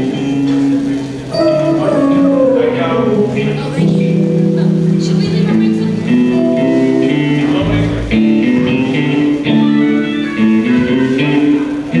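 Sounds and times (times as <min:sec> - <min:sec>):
instrumental guitar music: 0:00.0 - 0:12.0
low bass note: 0:01.3 - 0:05.1.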